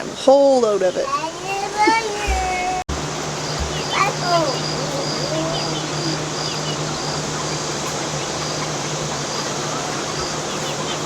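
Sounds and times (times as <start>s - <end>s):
chickens calling: 0.0s - 11.0s.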